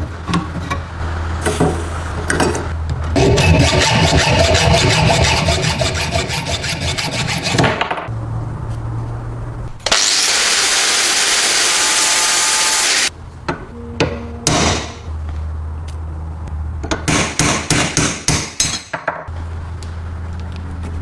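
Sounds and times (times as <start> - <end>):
hand tool scraping: 3.2 - 7.7.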